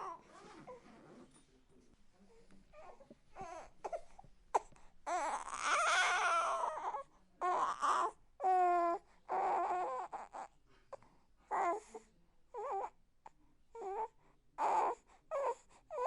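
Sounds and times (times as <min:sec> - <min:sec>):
baby crying: 0:02.8 - 0:10.5, 0:13.8 - 0:16.0.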